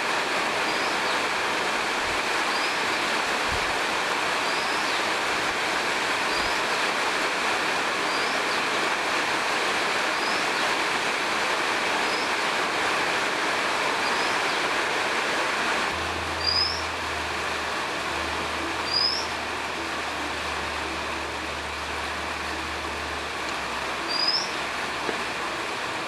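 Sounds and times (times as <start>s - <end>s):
steady rain falling: 0.0s - 26.0s
low steady hum: 15.7s - 26.0s
bird rising chirp: 15.9s - 20.2s, 24.0s - 24.6s.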